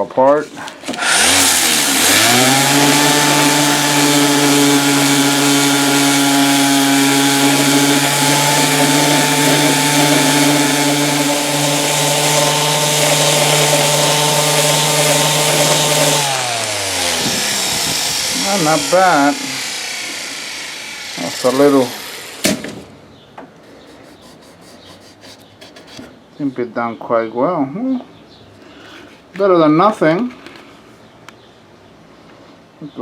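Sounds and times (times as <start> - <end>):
electric sander on wood: 0.9 - 22.8, 23.6 - 26.1.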